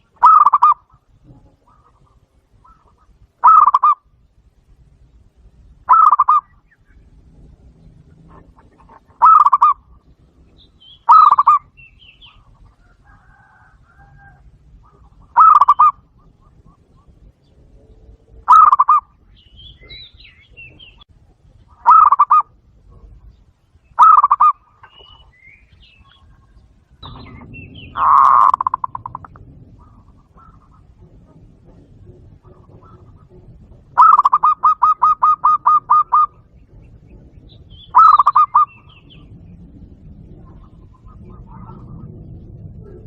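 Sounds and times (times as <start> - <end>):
dove trilled coos: 0.0 - 4.2, 5.6 - 43.0
low rumble: 4.0 - 43.0
faint bird chirps: 7.8 - 31.4.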